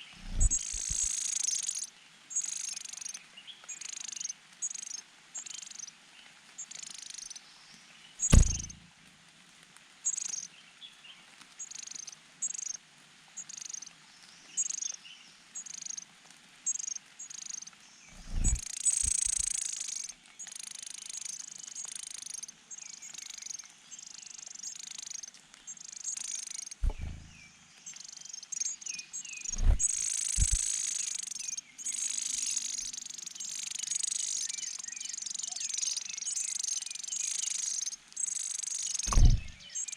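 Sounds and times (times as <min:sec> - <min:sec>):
nestlings chirping: 0:00.0 - 0:01.2, 0:18.2 - 0:19.8, 0:29.3 - 0:31.0
low thumps: 0:00.2 - 0:01.1, 0:08.3 - 0:08.8, 0:18.2 - 0:19.4, 0:26.8 - 0:27.4, 0:29.5 - 0:30.6, 0:39.1 - 0:39.6.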